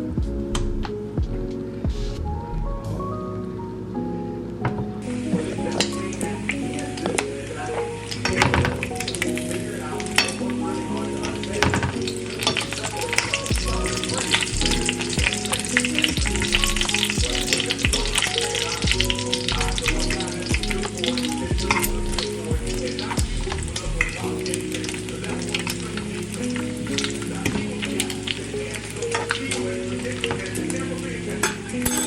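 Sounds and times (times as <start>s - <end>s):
background music with bass beat: 0.0s - 4.1s, 13.4s - 25.1s.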